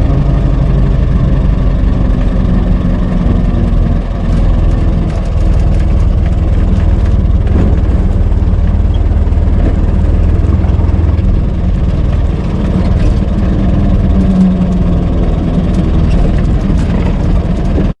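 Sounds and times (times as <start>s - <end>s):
car engine droning: 0.0s - 17.9s.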